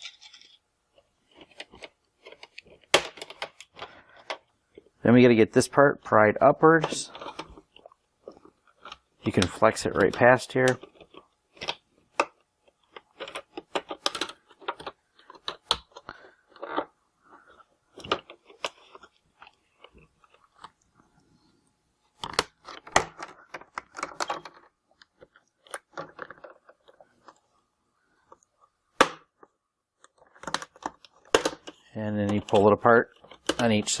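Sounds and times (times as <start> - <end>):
plastic clips clicking and crackling: 8.3 - 16.9, 29.4 - 34.0.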